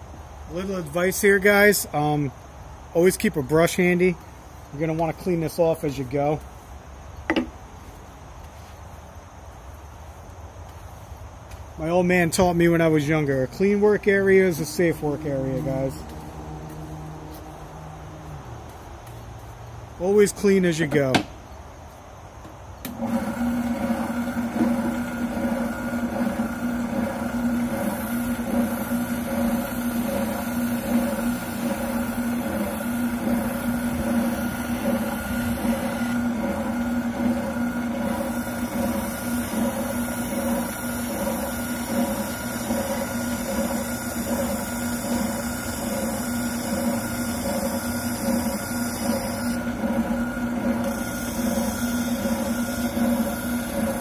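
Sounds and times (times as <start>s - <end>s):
oscillating sander humming: 11.8s - 18.8s, 22.9s - 54.0s.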